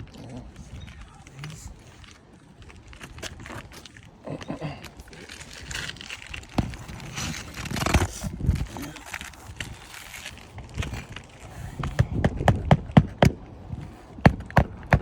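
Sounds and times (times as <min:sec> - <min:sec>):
shingles scraping and crinkling: 0:00.0 - 0:15.0.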